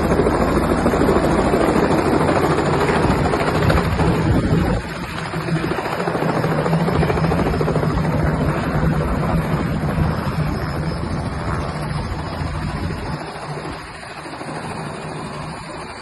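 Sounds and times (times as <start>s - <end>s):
helicopter rotor humming: 0.0s - 16.0s.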